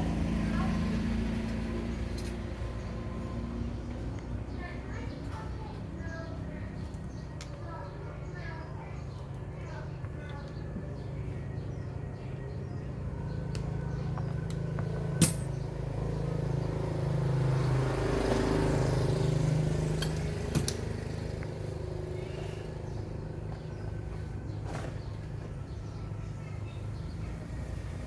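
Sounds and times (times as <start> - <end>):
sharp metallic clinks: 15.1 - 15.7.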